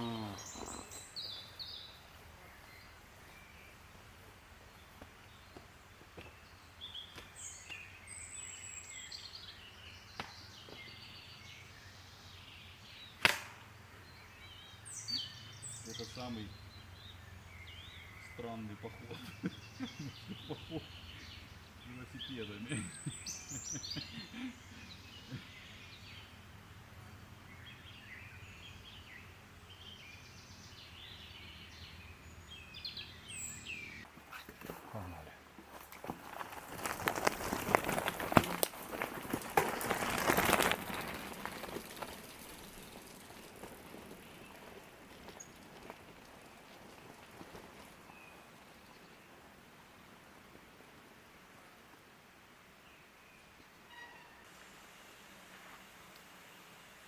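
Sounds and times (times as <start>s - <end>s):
birds chirping and singing: 0.0s - 3.8s, 14.0s - 26.4s, 27.4s - 35.3s
birds chirping: 0.0s - 51.2s
low outdoor background noise: 0.0s - 57.0s.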